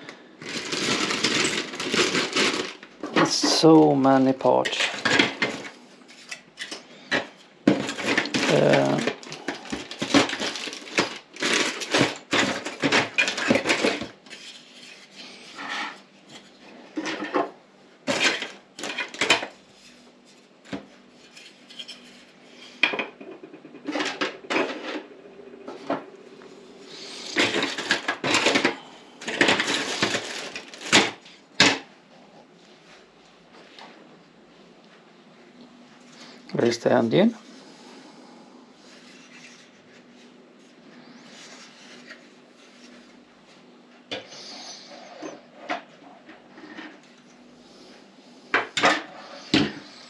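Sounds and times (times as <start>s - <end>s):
plastic parts clattering: 0.4s - 3.7s, 4.6s - 14.8s, 18.1s - 19.5s, 27.2s - 31.9s.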